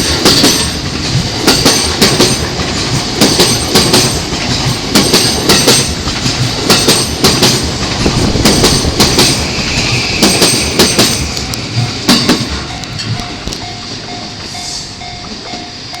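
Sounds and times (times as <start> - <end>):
train wheels clattering over rail joints: 0.0 - 16.0
level crossing warning bell: 11.8 - 16.0.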